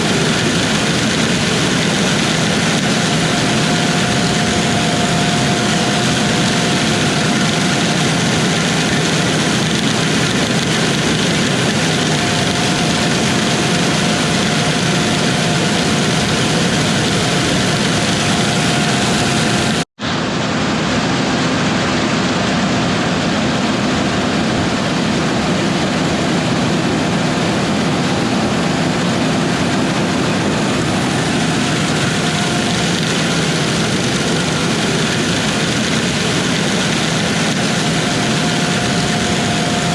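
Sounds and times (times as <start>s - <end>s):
diesel machinery drone: 0.0s - 39.9s
faint steady whine: 0.0s - 39.9s.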